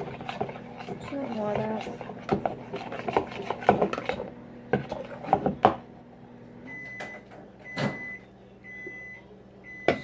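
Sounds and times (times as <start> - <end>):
spoon scraping in a bowl: 0.0 - 5.6.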